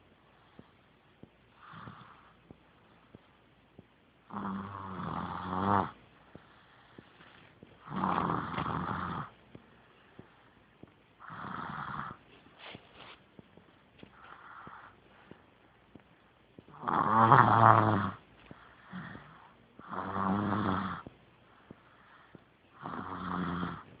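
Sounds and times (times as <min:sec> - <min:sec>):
soft breathing: 0:00.2 - 0:03.4, 0:06.0 - 0:16.8, 0:18.1 - 0:20.0, 0:21.0 - 0:22.8
person snoring: 0:01.6 - 0:02.3, 0:04.3 - 0:06.0, 0:07.8 - 0:09.4, 0:11.2 - 0:12.2, 0:16.7 - 0:21.1, 0:22.8 - 0:23.9.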